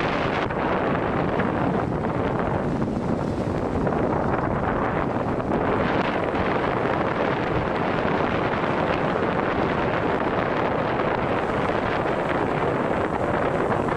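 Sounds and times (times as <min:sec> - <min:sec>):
sea surf: 0:00.0 - 0:13.9
wind buffeting microphone: 0:00.0 - 0:13.9.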